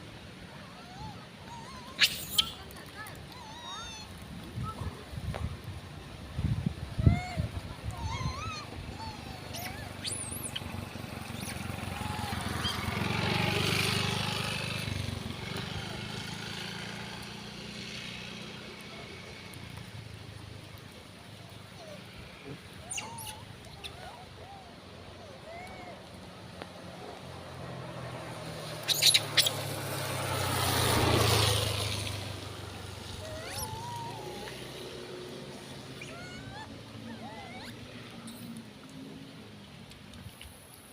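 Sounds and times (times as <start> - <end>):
high squeaky chirps: 1.5 - 2.7, 8.0 - 12.9, 22.8 - 24.1, 28.8 - 29.7, 33.3 - 34.5
vehicle passing: 8.9 - 23.7, 24.5 - 39.5.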